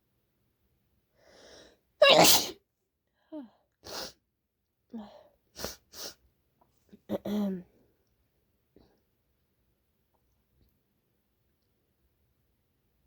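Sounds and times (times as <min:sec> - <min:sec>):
in-breath: 0:01.2 - 0:01.9
person sneezing: 0:02.0 - 0:02.6.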